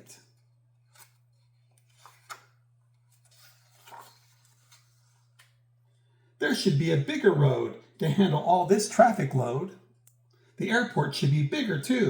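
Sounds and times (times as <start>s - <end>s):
low steady hum: 0.0s - 12.0s
book pages rustling and turning: 0.3s - 5.6s.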